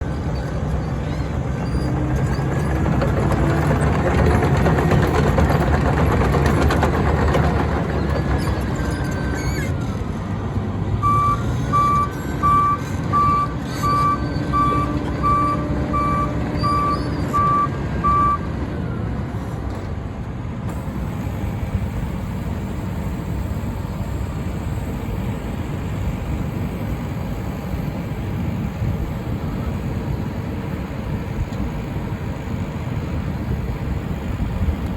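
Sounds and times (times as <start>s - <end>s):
diesel engine running: 0.0s - 34.9s
reversing alarm beeping: 11.0s - 18.5s.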